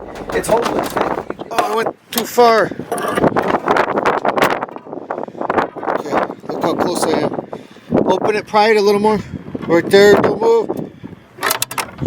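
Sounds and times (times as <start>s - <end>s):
crackling and rattling: 0.0s - 7.2s
strong wind buffeting microphone: 0.0s - 12.0s.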